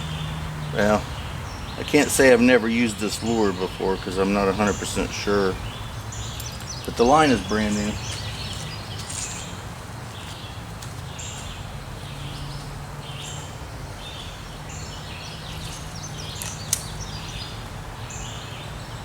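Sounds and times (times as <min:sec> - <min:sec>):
small birds chirping: 0:00.0 - 0:19.0
sharp click: 0:16.3 - 0:17.0.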